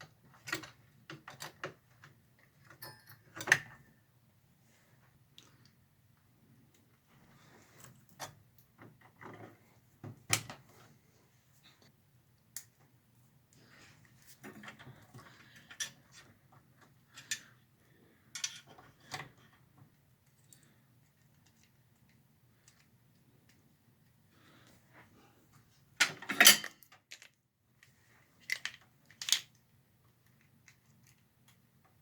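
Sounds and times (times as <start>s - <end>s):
cables clicking into connectors: 28.4s - 29.6s.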